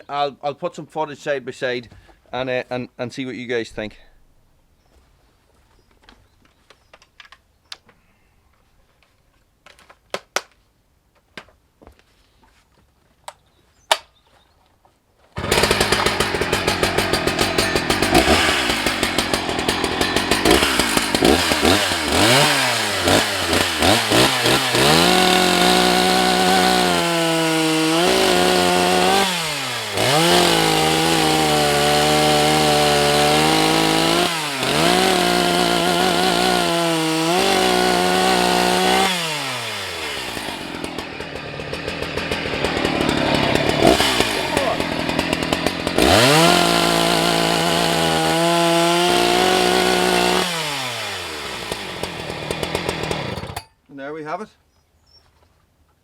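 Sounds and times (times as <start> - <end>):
chainsaw revving and cutting: 15.4 - 53.6.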